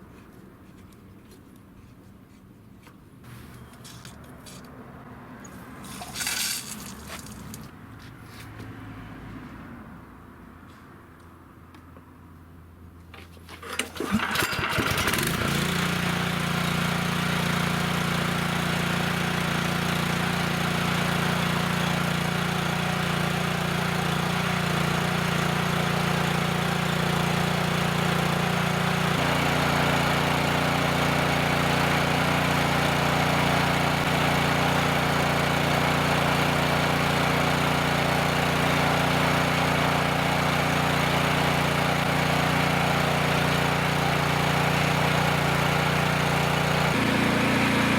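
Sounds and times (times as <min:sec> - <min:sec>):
pressure washer engine starting and running: 0:05.6 - 0:07.6, 0:13.6 - 0:47.9.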